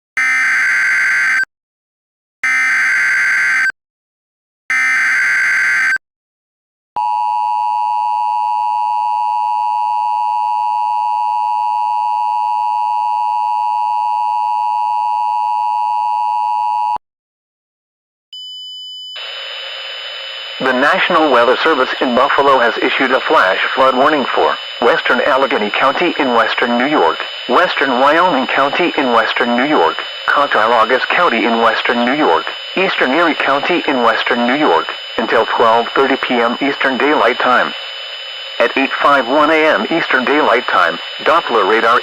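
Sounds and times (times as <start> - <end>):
data tone bursts: 19.2 - 42.0
quiet steady high tone: 19.2 - 42.0
harsh two-tone alert signal: 20.5 - 38.0, 38.6 - 42.0.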